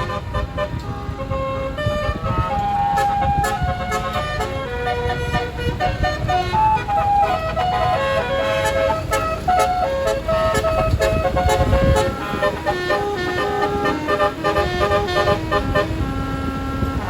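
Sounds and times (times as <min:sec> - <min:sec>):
bus musical horn: 0:00.0 - 0:17.0.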